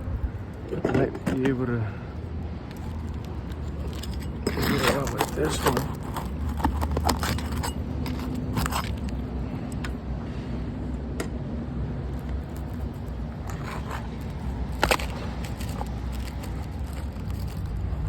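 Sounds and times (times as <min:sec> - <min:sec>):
steady low rumble: 0:00.0 - 0:04.6
roof shingle clicking and cracking: 0:02.7 - 0:10.0, 0:12.0 - 0:18.0.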